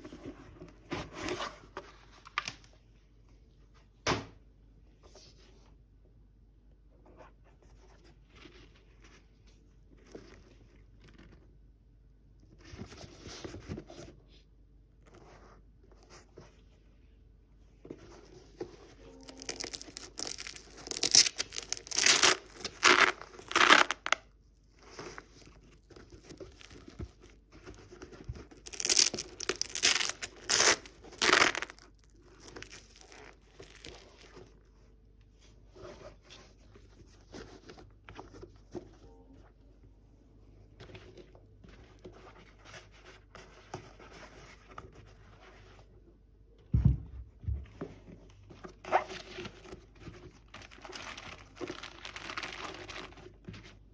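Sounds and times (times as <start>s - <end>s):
paper rustling: 17.9s - 24.2s, 24.8s - 34.6s, 48.6s - 53.7s
paper crinkling and tearing: 19.0s - 24.2s, 24.8s - 34.4s, 50.5s - 53.7s.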